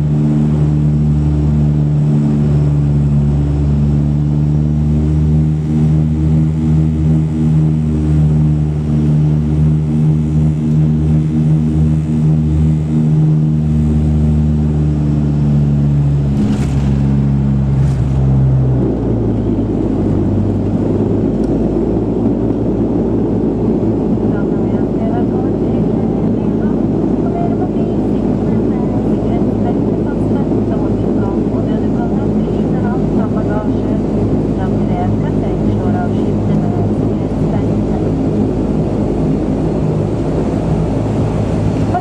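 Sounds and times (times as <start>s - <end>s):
propeller drone in cabin: 0.0s - 42.0s
broad rushing noise: 15.6s - 24.4s.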